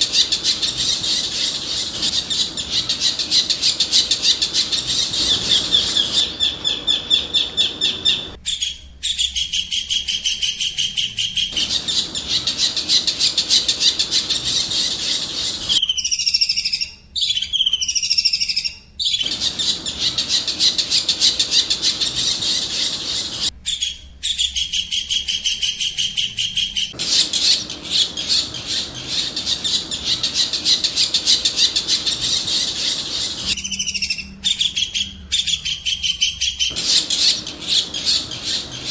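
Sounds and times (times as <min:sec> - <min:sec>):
songbird chirps and trills: 0:00.0 - 0:38.9.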